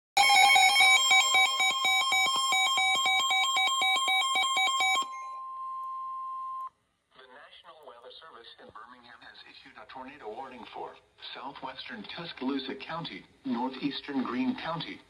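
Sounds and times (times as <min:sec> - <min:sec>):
steady alarm tone: 0:00.2 - 0:06.7
warbling electronic alarm: 0:00.2 - 0:06.7.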